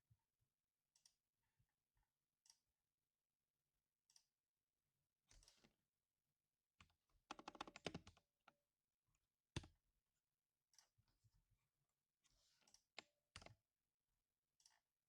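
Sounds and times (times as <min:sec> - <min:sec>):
typing on mechanical keyboard: 0:07.3 - 0:08.1.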